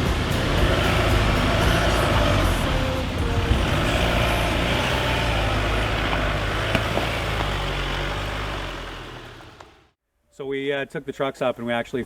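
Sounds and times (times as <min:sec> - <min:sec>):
background music: 0:00.0 - 0:08.8
truck engine running: 0:00.0 - 0:10.0.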